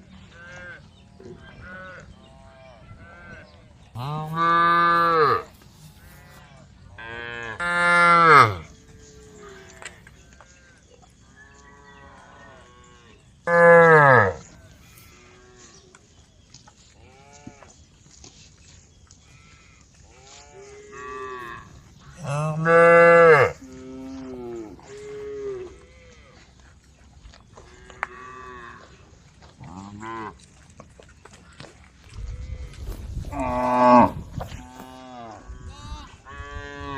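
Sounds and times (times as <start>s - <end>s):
cows mooing: 4.0s - 6.4s, 7.0s - 10.0s, 11.8s - 15.7s, 19.4s - 26.4s, 29.6s - 30.4s, 32.4s - 36.9s.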